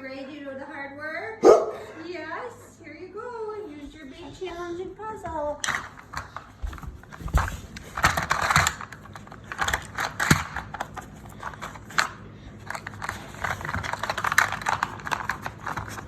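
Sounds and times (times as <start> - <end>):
puzzle toy pieces clicking and rattling: 8.0 - 16.0.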